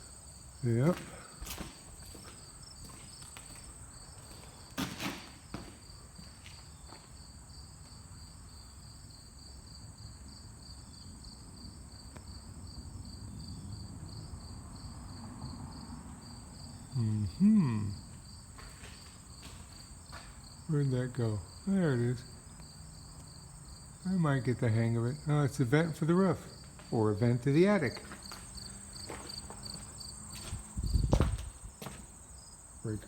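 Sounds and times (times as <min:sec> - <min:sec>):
insects chirping: 0:00.0 - 0:33.0
brief vocal sound: 0:17.0 - 0:18.0.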